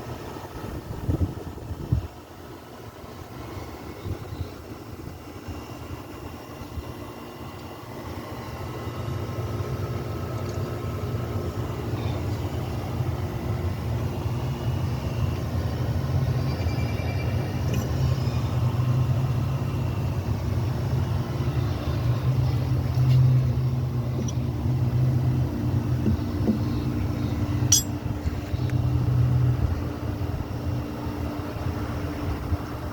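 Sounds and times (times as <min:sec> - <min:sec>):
diesel engine running: 0:07.8 - 0:32.9.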